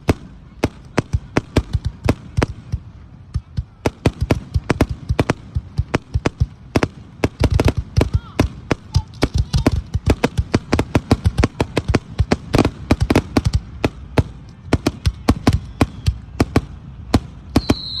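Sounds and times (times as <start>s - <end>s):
fireworks whistling: 6.8s - 18.0s.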